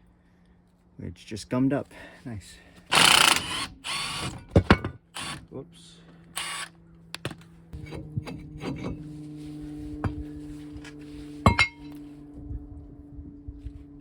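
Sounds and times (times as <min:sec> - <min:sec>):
low hum: 0:06.0 - 0:14.0
loud ringing metal clank: 0:07.8 - 0:09.1, 0:11.5 - 0:12.0
metal tools clinking and knocking: 0:11.5 - 0:12.0.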